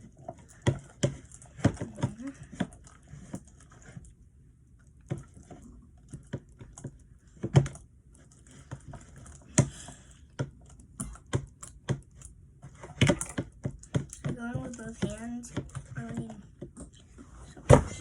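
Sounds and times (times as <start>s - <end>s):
slime being mixed clicking: 9.4s - 17.0s.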